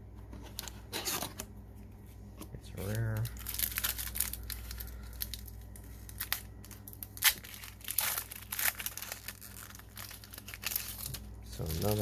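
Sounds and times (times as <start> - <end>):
foil wrapper crinkling and tearing: 2.8 - 12.0.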